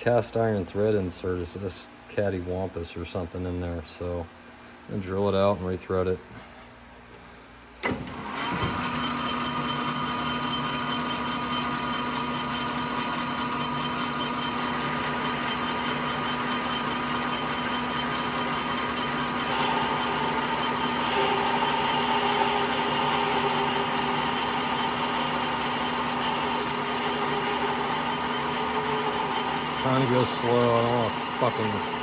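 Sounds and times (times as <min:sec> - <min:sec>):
machine tool motor running: 0:07.9 - 0:32.0
drill cutting metal: 0:08.5 - 0:32.0
thin high whine: 0:19.5 - 0:32.0.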